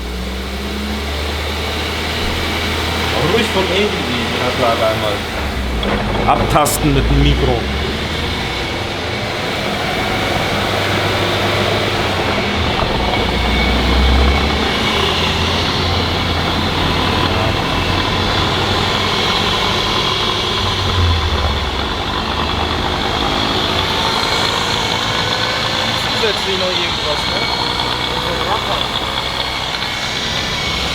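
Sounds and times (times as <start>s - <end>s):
drivetrain mechanical running noise: 0.0s - 30.9s
low hum: 19.9s - 24.5s.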